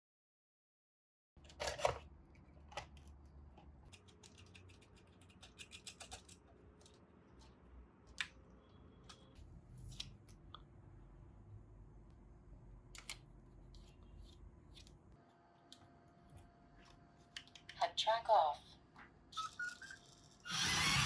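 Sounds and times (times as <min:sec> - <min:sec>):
small clicks snaps and scratches: 0:02.7 - 0:08.4.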